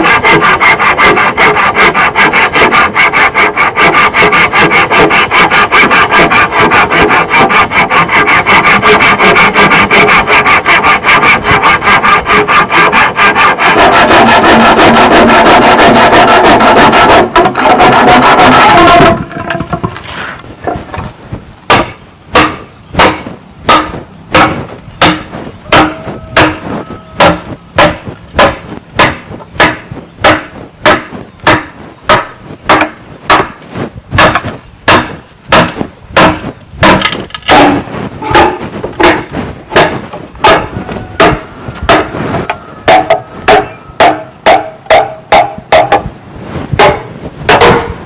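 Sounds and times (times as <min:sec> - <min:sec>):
hammering on bamboo: 0:00.0 - 0:20.0, 0:21.7 - 0:33.6, 0:34.2 - 0:46.1.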